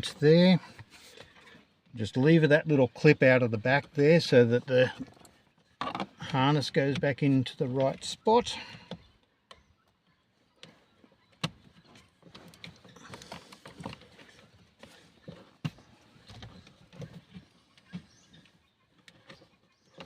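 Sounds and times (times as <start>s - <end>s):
plastic rubbing and scraping: 11.3s - 20.0s.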